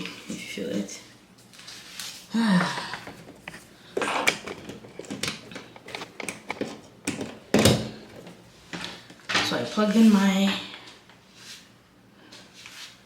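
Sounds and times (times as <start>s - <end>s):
objects clicking knocking and rustling: 3.0s - 7.9s.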